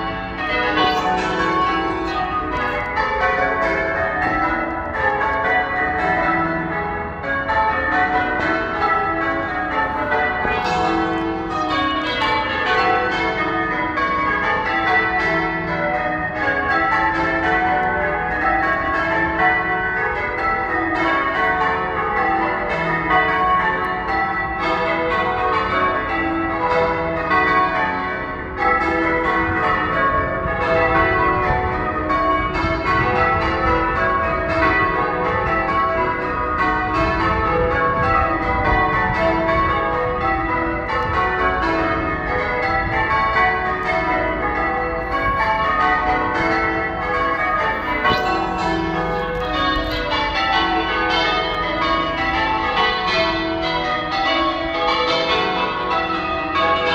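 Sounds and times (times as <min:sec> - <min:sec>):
church bells ringing: 0:00.0 - 0:56.9.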